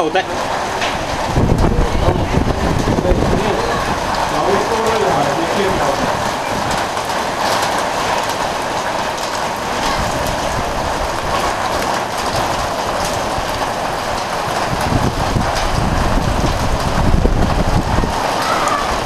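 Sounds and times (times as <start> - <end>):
heavy rain: 0.0 - 19.0.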